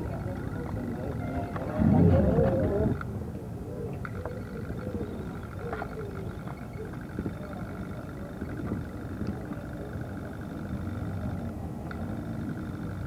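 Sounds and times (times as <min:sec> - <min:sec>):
motorcycle engines running: 0:00.0 - 0:03.0, 0:04.0 - 0:13.0.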